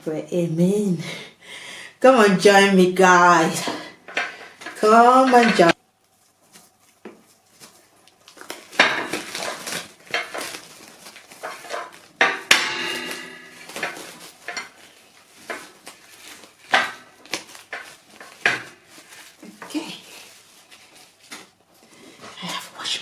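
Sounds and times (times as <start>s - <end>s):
dishes clattering: 4.1s - 5.8s, 8.8s - 10.6s, 11.3s - 15.7s, 16.6s - 18.9s.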